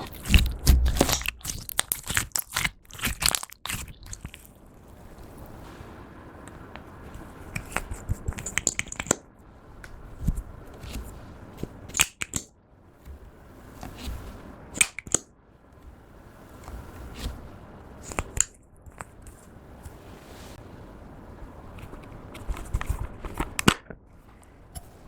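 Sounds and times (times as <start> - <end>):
air pockets popping in slime: 0.0 - 4.3
slime squishing: 0.0 - 5.4.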